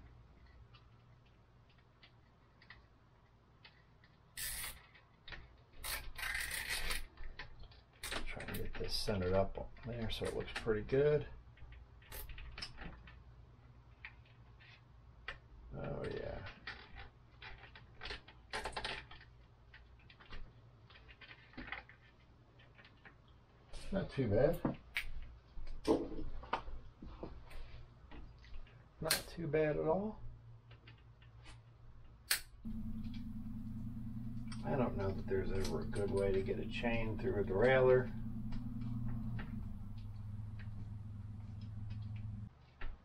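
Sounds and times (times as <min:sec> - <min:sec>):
light clicks of small parts: 0:00.4 - 0:09.0
faint steady hum: 0:32.6 - 0:42.5
rattling clicks: 0:32.7 - 0:42.5.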